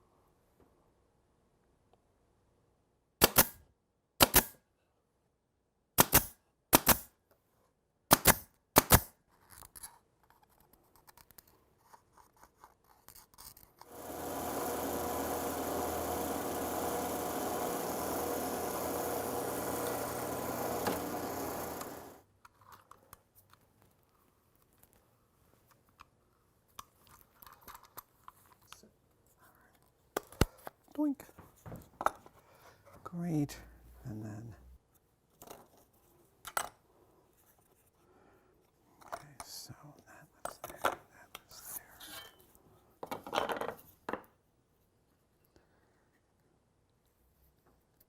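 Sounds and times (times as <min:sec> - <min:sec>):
machine running: 0:13.9 - 0:22.2.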